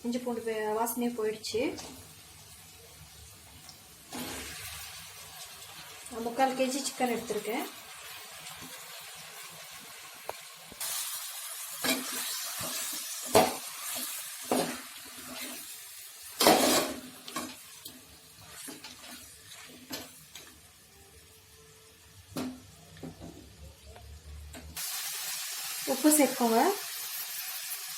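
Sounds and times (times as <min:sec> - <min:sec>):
chicken sizzling in oil: 0:00.1 - 0:23.0, 0:24.8 - 0:27.9
spoon scraping a pan: 0:11.8 - 0:15.7, 0:16.4 - 0:20.2.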